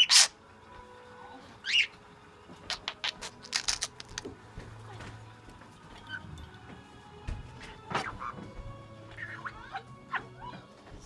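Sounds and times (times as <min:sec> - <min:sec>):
bird chirp: 0:01.6 - 0:02.0, 0:02.6 - 0:04.1, 0:09.1 - 0:10.2.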